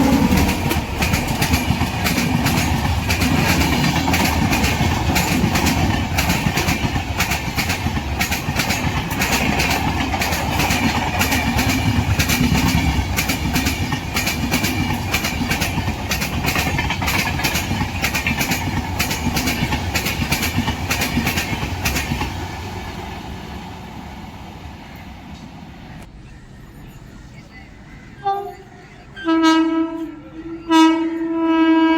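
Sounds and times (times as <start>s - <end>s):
train wheels clattering over joints: 0.0s - 23.1s
train rumble: 0.0s - 31.9s.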